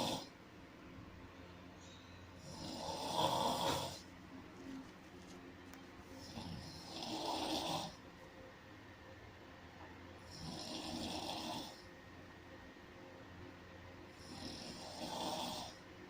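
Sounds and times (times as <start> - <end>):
long snores: 0.0 - 0.3, 2.4 - 4.0, 6.2 - 8.0, 10.2 - 11.9, 14.1 - 15.8
quiet breathing: 1.3 - 4.1, 14.1 - 16.0.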